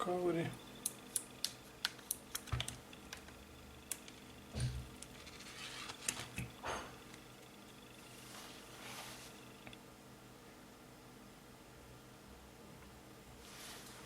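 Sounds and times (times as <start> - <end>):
soft rustling: 8.1 - 9.4, 13.4 - 14.0.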